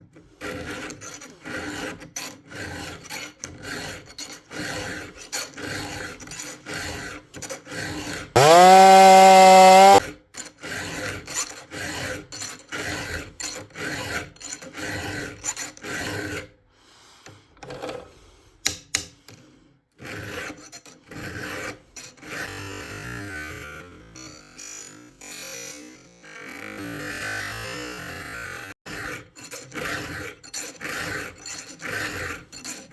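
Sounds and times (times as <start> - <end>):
file rasping on chainsaw chain: 8.4 - 10.0, 28.9 - 32.9
loud pitched sound: 8.4 - 10.0.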